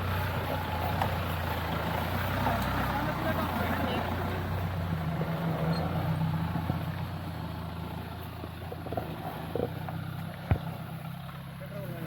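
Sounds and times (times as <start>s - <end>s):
engine running at low revs: 0.0s - 12.0s
clatter: 5.5s - 11.6s.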